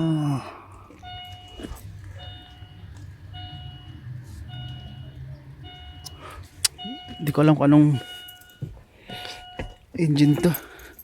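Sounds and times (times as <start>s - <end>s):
low steady hum: 0.0s - 8.8s
electronic warning chime beeping: 1.0s - 8.7s.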